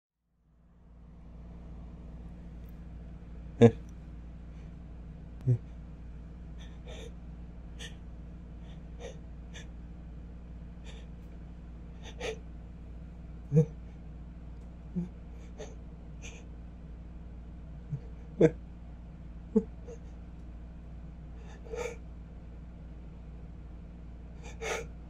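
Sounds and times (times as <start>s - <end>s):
voiced throat catches: 3.6s - 3.9s, 5.4s - 5.8s, 12.0s - 12.4s, 13.5s - 13.9s, 14.9s - 16.4s
person gasping and sniffing: 6.6s - 7.2s, 12.0s - 12.4s, 21.4s - 22.0s, 24.4s - 24.9s.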